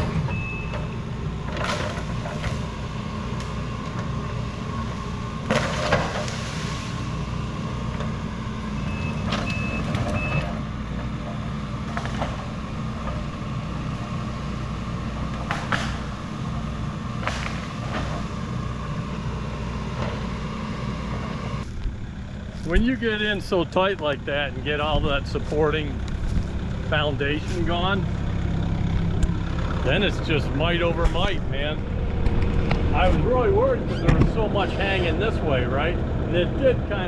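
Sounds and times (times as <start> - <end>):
heavy machine engine running: 0.0 - 37.0
back-up alarm beeps: 0.3 - 1.0, 8.8 - 10.5.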